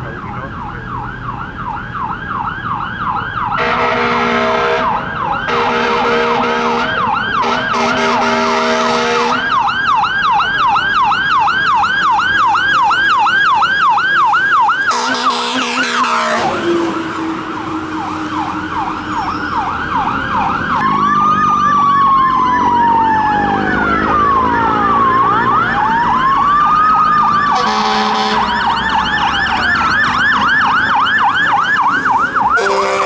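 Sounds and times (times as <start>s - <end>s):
siren yelping: 0.0s - 33.0s
multi-tone horn blasts: 3.6s - 9.6s, 14.9s - 17.9s, 27.5s - 29.0s, 32.5s - 33.0s.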